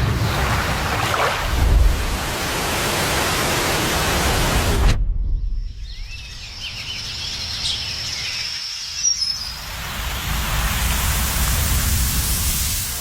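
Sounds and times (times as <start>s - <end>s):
hissing wash: 9.6s - 13.0s.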